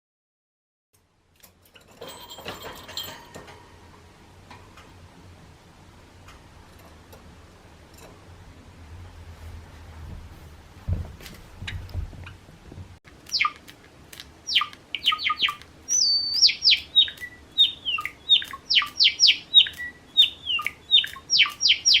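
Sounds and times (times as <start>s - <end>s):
sparrow calling: 13.3s - 13.6s, 14.4s - 22.0s.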